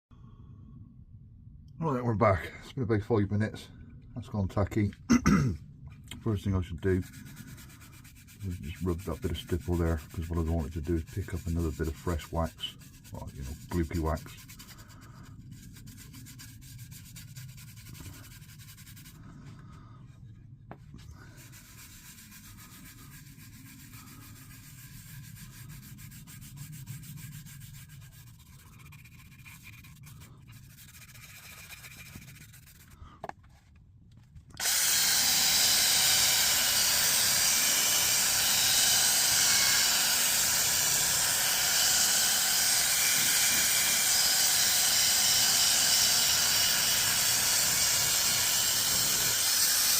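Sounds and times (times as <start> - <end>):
hand rubbing wax into wood: 6.0 - 33.8
loud steady hiss: 34.7 - 49.9.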